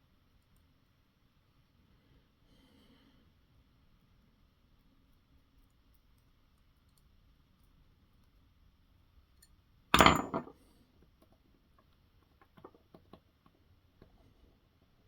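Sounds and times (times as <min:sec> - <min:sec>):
metal parts clattering on workbench: 0:10.0 - 0:10.5.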